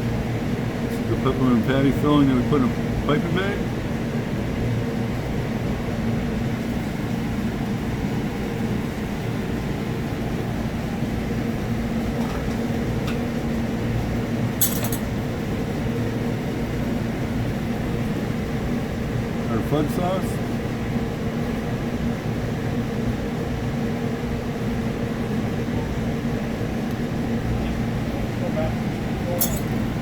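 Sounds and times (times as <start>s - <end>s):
ventilation fan humming: 0.0s - 30.0s
glass dishware clinking: 29.4s - 29.9s.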